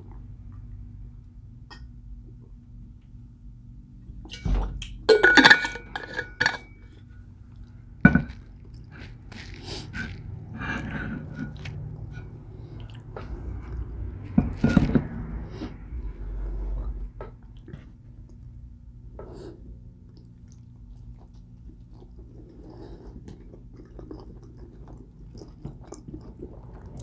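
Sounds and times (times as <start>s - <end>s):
utensils and dishes clinking: 4.3s - 7.1s
chewing: 7.3s - 14.3s, 17.2s - 18.6s, 19.3s - 27.0s.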